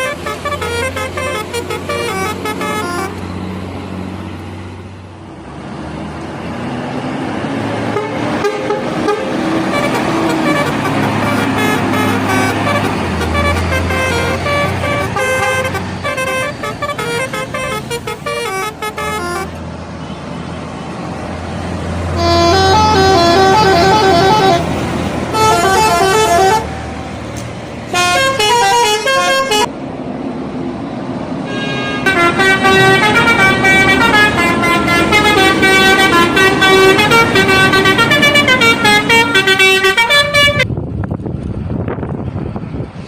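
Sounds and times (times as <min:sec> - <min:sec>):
bus horn melody: 0:00.0 - 0:03.3, 0:07.8 - 0:20.1, 0:22.1 - 0:27.1, 0:27.9 - 0:29.7, 0:31.4 - 0:40.7
low bus engine drone: 0:00.0 - 0:43.0
traffic noise: 0:00.0 - 0:43.0.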